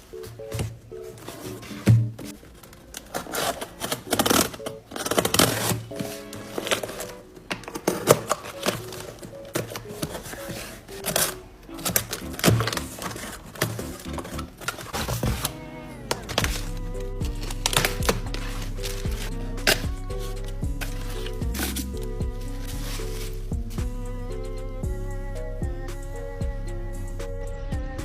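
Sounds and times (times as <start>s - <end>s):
background music: 0.0s - 28.0s
packaging crackling: 2.3s - 23.5s.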